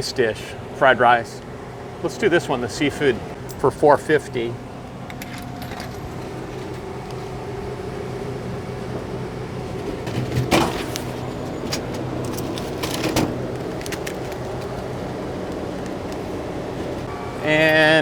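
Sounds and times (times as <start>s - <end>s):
vending machine humming: 0.0s - 18.0s
vending machine clunks: 9.3s - 18.0s.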